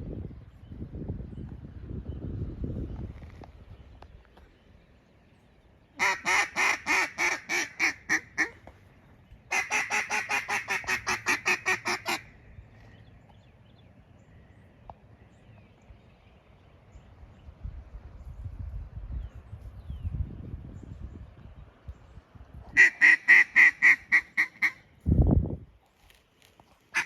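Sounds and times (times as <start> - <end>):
duck call quacks: 6.0 - 8.6, 9.5 - 12.3, 22.8 - 24.8.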